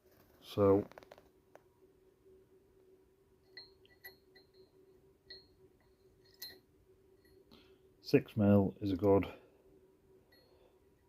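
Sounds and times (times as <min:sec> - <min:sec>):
faint steady hum: 0:00.0 - 0:11.0
metallic clicks and clinks: 0:03.4 - 0:07.6.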